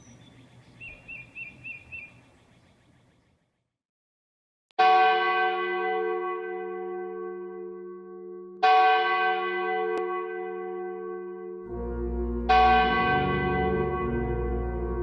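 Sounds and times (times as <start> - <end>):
large church bell tolling: 4.8 - 15.0.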